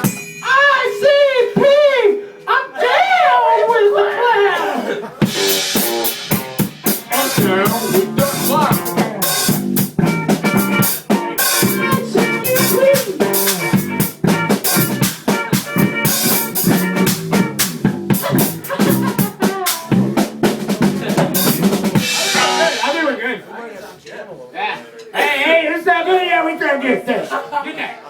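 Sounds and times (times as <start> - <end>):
live band playing: 0.0 - 0.6, 5.2 - 23.2
drum kit beat: 0.0 - 1.8, 5.2 - 23.2.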